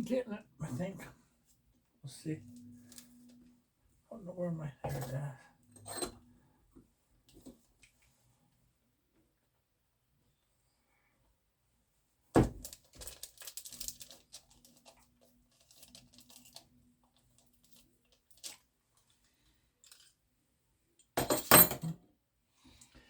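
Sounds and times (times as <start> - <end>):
small clicks and scrapes: 12.7 - 20.2.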